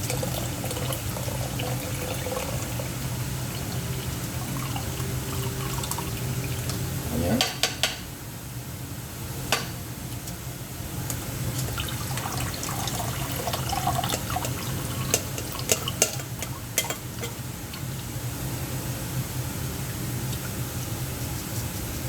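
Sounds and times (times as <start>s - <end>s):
water pouring into a pot: 0.0s - 6.8s, 11.6s - 17.9s
steady low hum: 0.0s - 22.0s
pot and utensils clinking: 12.7s - 17.4s.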